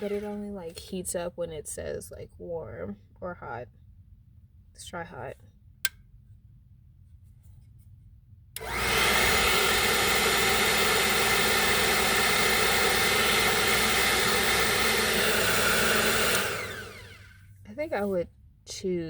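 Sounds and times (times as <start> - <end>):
hair dryer running: 8.6 - 17.5.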